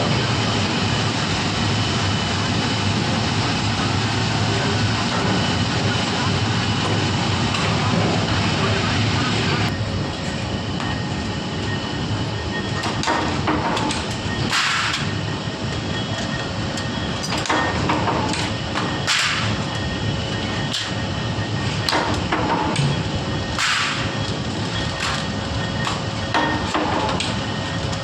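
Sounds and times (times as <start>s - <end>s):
factory machinery running: 0.0s - 28.0s.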